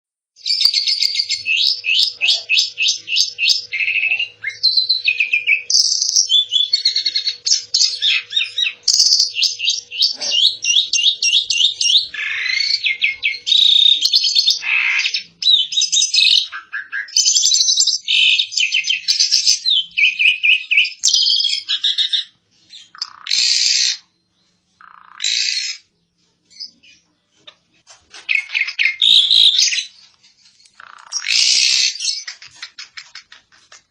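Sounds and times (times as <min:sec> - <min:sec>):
starling chattering and whistling: 0:00.4 - 0:24.2, 0:24.8 - 0:25.9, 0:26.5 - 0:33.9.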